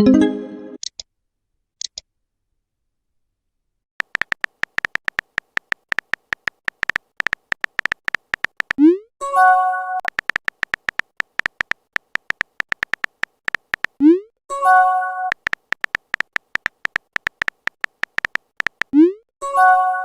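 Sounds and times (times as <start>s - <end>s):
phone keyboard typing clicks: 4.0s - 8.9s, 10.0s - 14.0s, 15.3s - 19.0s.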